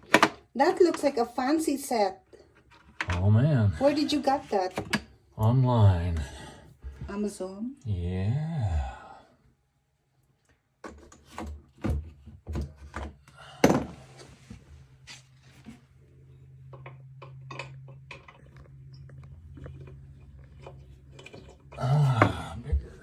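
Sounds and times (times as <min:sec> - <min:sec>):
low steady hum: 0:12.7 - 0:23.0.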